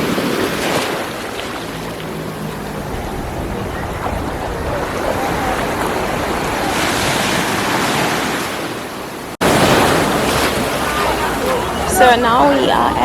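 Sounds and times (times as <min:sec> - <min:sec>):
surf washing on a beach: 0:00.0 - 0:13.0
wind buffeting microphone: 0:00.0 - 0:13.0.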